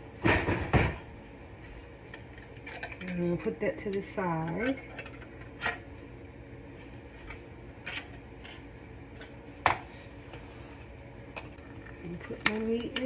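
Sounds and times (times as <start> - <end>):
steady low hum: 0.0 - 13.0
kitchen items knocking and clinking: 0.2 - 1.1, 2.1 - 5.8.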